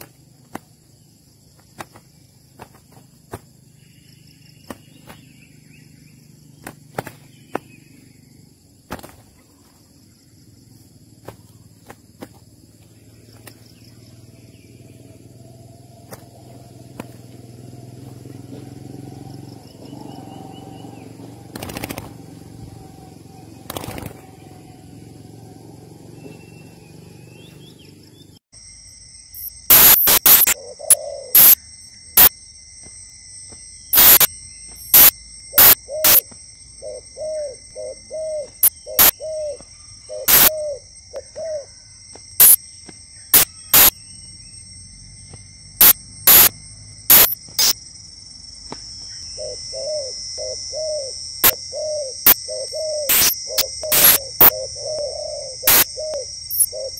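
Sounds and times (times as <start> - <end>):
high-pitched drone: 29.3 - 33.0, 33.8 - 39.4, 40.2 - 40.9, 42.4 - 47.9, 49.4 - 56.9
clicks: 29.4 - 30.6, 34.0 - 36.4, 40.3 - 40.5, 42.4 - 42.6, 45.8 - 46.5, 47.1 - 47.8, 53.1 - 54.5
dove cooing: 30.6 - 31.6, 35.0 - 42.5, 49.1 - 56.9.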